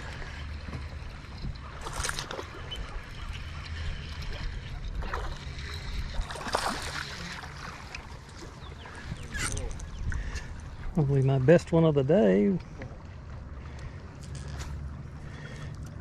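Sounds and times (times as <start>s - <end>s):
fish splashing water: 1.6s - 8.5s.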